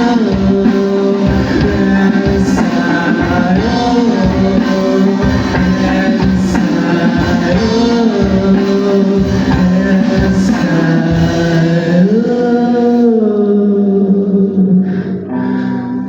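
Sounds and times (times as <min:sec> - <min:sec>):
guitar: 0:00.0 - 0:12.6
drums: 0:00.0 - 0:13.2
singer holding long notes: 0:00.0 - 0:16.0.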